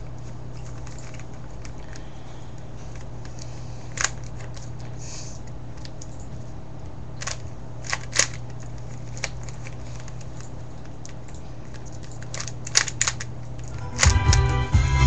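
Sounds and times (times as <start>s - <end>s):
steady low hum: 0.0s - 15.0s
puzzle cube plastic clicks: 7.2s - 10.4s, 11.0s - 14.2s.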